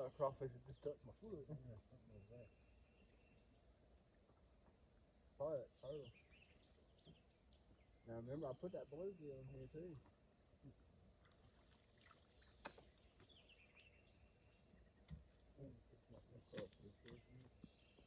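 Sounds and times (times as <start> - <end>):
faint insect drone: 0.0 - 18.0
faint voice: 15.6 - 17.5.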